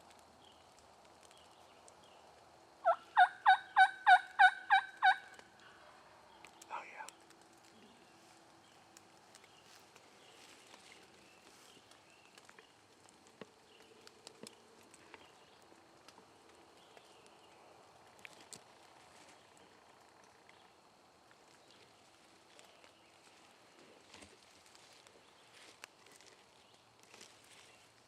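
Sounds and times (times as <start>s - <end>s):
small ticks and rustles: 0.0s - 3.5s, 4.2s - 28.0s
distant bird calls: 1.3s - 18.5s.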